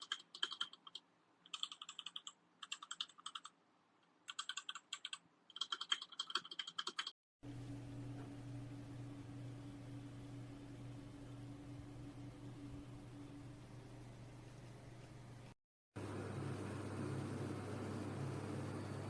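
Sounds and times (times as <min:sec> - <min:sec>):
mechanical keyboard typing: 0:00.0 - 0:03.5, 0:04.3 - 0:07.1
steady low hum: 0:07.4 - 0:19.0.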